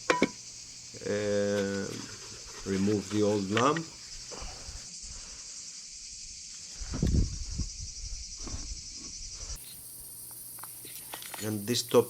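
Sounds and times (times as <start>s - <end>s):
steady high hiss: 0.0s - 12.0s
knocks and rustles of lamp handling: 0.1s - 0.4s.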